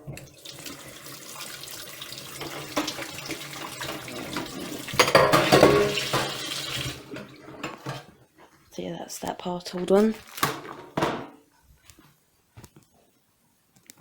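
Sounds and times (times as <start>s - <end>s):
tap water running: 0.0s - 8.1s.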